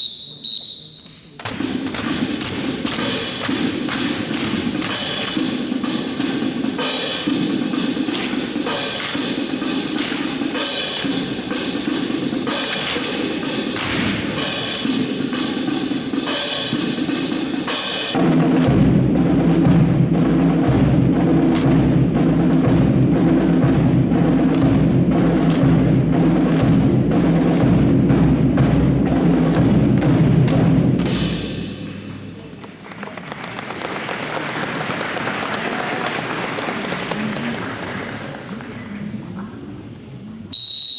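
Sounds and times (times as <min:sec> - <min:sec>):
sharp clacks: 0:01.0 - 0:18.8
music with heavy drum beat: 0:01.5 - 0:32.1
applause: 0:32.4 - 0:39.1.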